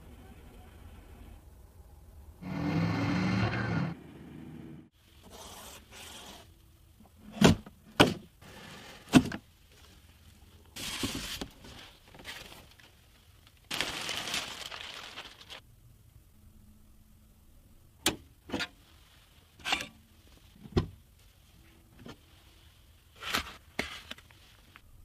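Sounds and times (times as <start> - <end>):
packaging sliding and rustling: 13.7 - 15.6.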